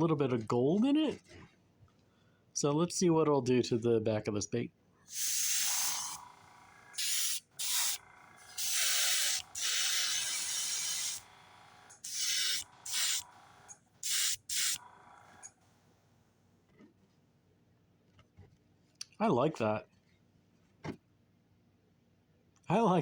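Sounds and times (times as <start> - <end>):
airbrush spraying bursts: 5.1 - 14.8.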